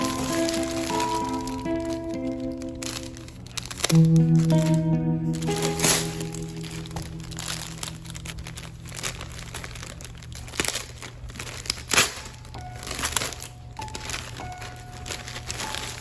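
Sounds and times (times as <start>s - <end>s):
packaging crinkling: 0.0s - 16.0s
soft background music: 0.0s - 16.0s.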